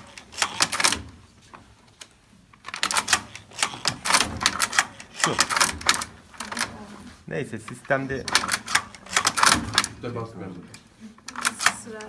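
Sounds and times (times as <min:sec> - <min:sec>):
knitting machine clattering: 0:00.0 - 0:01.2, 0:02.5 - 0:06.9, 0:07.6 - 0:10.2, 0:11.2 - 0:12.0.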